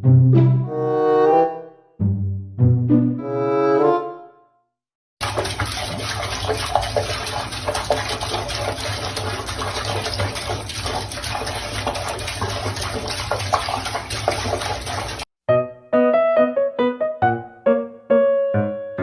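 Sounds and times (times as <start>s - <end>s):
running water rushing: 5.2s - 15.3s.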